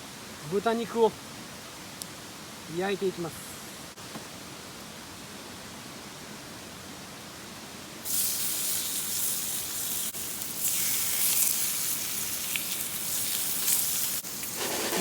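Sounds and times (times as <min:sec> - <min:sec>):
low hiss: 0:00.0 - 0:15.0
meat sizzling in a frying pan: 0:08.0 - 0:15.0.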